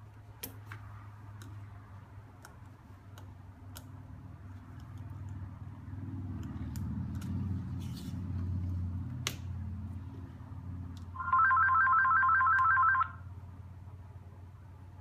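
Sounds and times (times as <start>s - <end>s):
telephone ringing: 11.2s - 13.2s.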